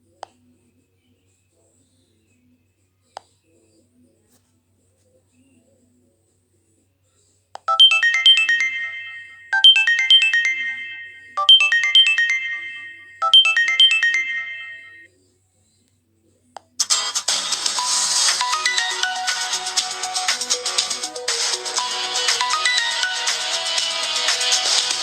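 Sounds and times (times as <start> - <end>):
phone ringtone chiming melody: 7.7 - 15.1, 17.8 - 25.0.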